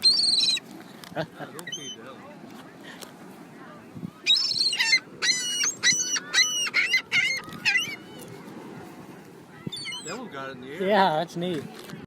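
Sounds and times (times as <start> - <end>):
seagulls calling: 0.0 - 0.6, 1.5 - 2.1, 4.2 - 8.4, 9.6 - 10.3
beach background noise: 0.0 - 12.0.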